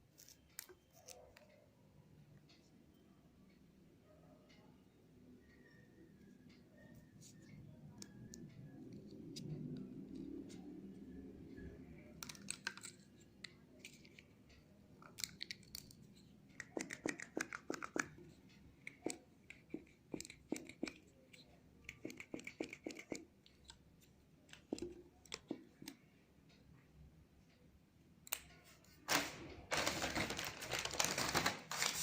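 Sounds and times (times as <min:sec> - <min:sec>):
packaging crackling and tearing: 0:29.1 - 0:32.0.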